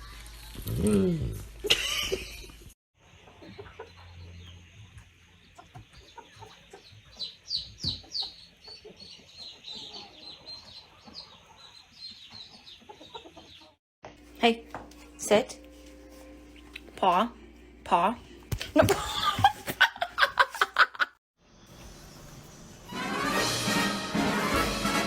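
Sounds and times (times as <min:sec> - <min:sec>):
birds chirping: 0:03.0 - 0:13.8.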